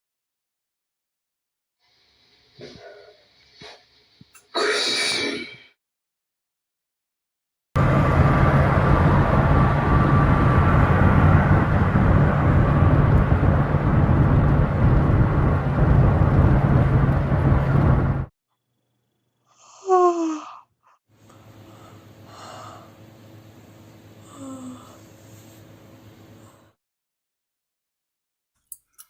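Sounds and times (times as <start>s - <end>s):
person yawning: 4.5s - 5.7s, 19.7s - 20.6s, 24.2s - 25.0s
loud steady rumbling: 7.8s - 18.3s, 21.2s - 26.7s.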